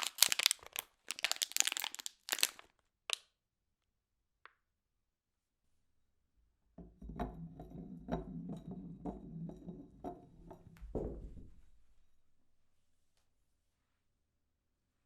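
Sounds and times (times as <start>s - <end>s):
glass bottle rolling on hard surface: 6.8s - 11.5s.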